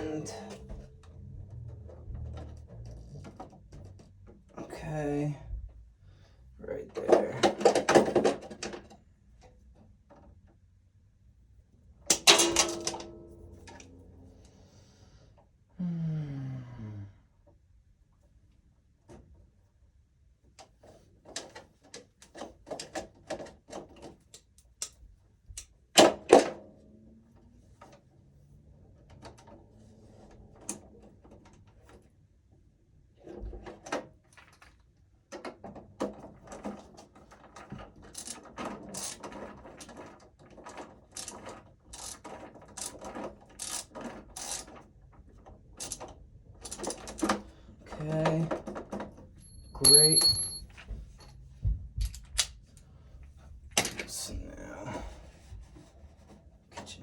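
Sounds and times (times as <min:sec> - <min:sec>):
clicks and rattles of tools: 0:07.0 - 0:09.5, 0:12.1 - 0:13.9, 0:33.6 - 0:44.8, 0:45.4 - 0:47.4.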